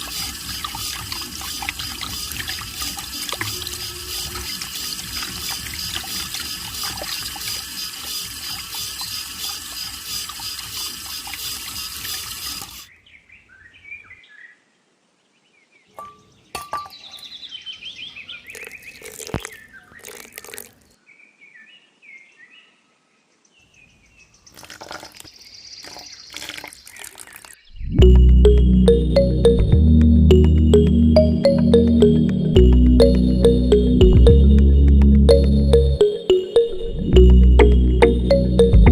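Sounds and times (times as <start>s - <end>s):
water running: 0.0s - 12.9s, 18.5s - 20.9s, 24.5s - 27.6s.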